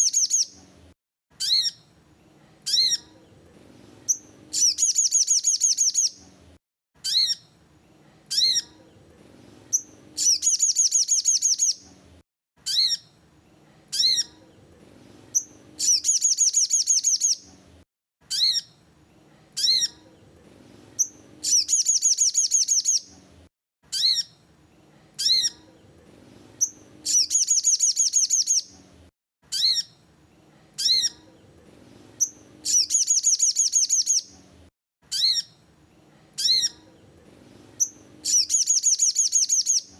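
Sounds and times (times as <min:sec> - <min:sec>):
bird singing with trill: 0:00.0 - 0:00.6, 0:01.4 - 0:01.9, 0:02.7 - 0:03.2, 0:04.1 - 0:06.2, 0:07.0 - 0:07.5, 0:08.3 - 0:08.8, 0:09.7 - 0:11.8, 0:12.6 - 0:13.2, 0:13.9 - 0:14.4, 0:15.3 - 0:17.5, 0:18.3 - 0:18.8, 0:19.6 - 0:20.0, 0:21.0 - 0:23.1, 0:23.9 - 0:24.4, 0:25.2 - 0:25.8, 0:26.6 - 0:28.8, 0:29.5 - 0:30.0, 0:30.8 - 0:31.4, 0:32.2 - 0:34.3, 0:35.1 - 0:35.6, 0:36.4 - 0:37.0, 0:37.8 - 0:39.9.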